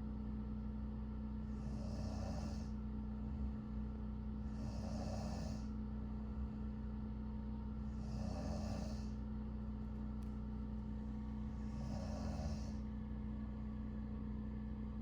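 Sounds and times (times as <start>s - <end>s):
steady low hum: 0.0s - 15.0s
woman snoring: 1.5s - 2.8s, 4.4s - 5.7s, 7.9s - 9.2s, 11.6s - 12.8s.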